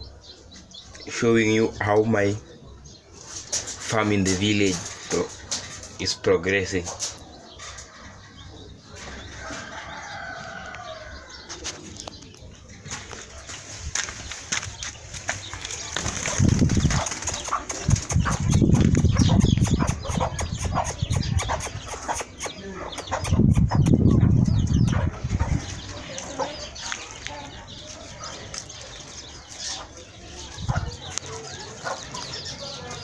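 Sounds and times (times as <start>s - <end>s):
chickens clucking: 0.0s - 33.0s
wing flapping: 15.3s - 22.1s.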